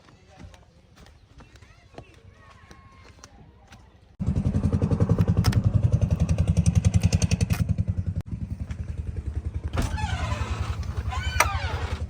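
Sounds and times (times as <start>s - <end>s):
heavy machinery engine chugging: 4.2s - 12.0s.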